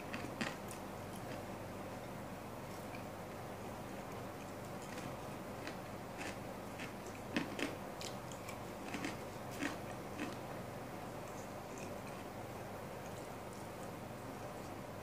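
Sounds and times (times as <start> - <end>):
person chewing crunchy food: 0.0 - 1.4, 4.4 - 10.5
low background hum: 0.0 - 15.0.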